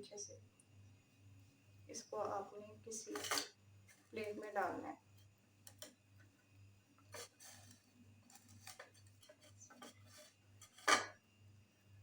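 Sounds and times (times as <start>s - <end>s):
plate clinking: 10.6s - 11.2s.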